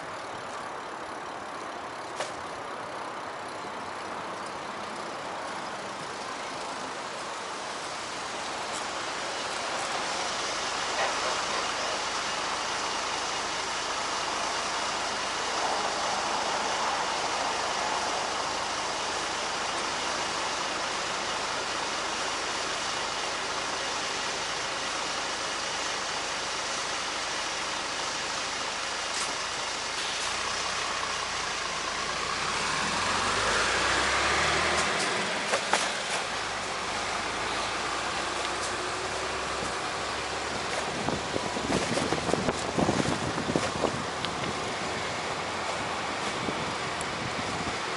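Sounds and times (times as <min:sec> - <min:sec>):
bicycle riding noise: 0:00.0 - 0:47.9
street traffic: 0:00.0 - 0:47.9
motor vehicle passing: 0:31.3 - 0:47.8.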